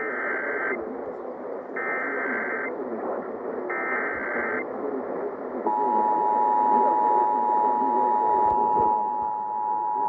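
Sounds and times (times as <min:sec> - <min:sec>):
data bursts over radio: 0:00.0 - 0:00.8, 0:01.8 - 0:03.0, 0:03.6 - 0:04.7
radio static hiss: 0:00.0 - 0:10.0.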